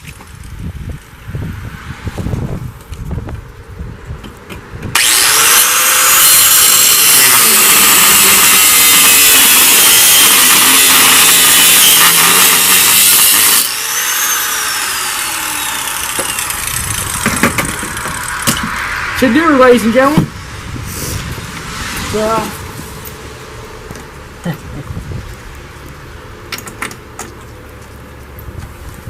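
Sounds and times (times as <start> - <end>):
power tool cutting steel bolt: 4.9 - 18.8
motor winding down whine: 4.9 - 20.1.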